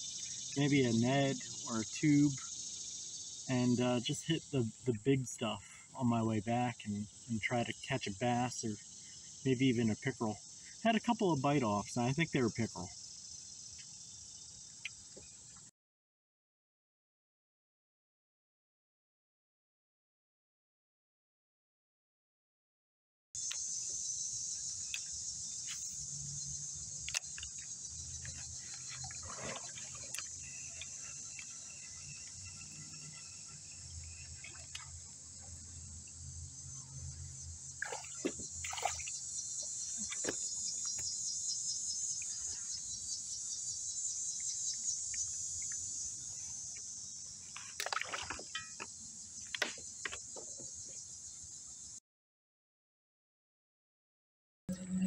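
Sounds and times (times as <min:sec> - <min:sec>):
insects chorus: 0:00.0 - 0:15.7, 0:23.4 - 0:52.0
water splashing against kayak: 0:37.8 - 0:39.2, 0:47.7 - 0:48.6.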